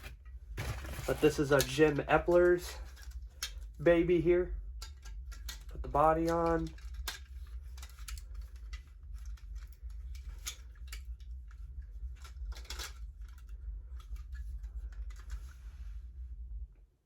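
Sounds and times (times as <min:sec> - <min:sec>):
steady low hum: 0:00.0 - 0:17.0
clicks and taps of model parts: 0:04.8 - 0:11.3.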